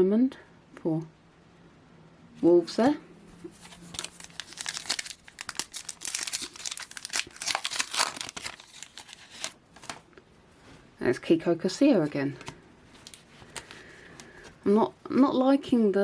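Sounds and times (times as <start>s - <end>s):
foil wrapper tearing and crinkling: 3.5s - 10.0s.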